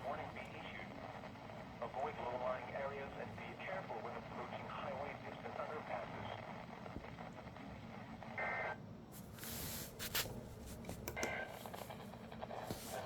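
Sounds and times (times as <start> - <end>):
radio hiss and static: 0.0 - 8.8.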